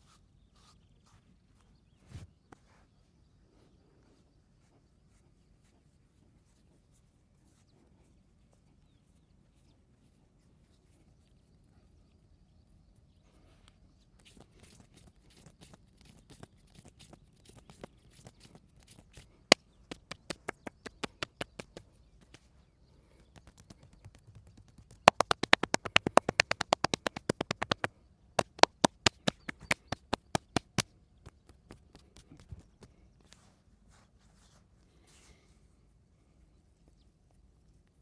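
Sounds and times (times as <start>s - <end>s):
hands slapping body: 15.4s - 22.5s, 23.3s - 32.9s.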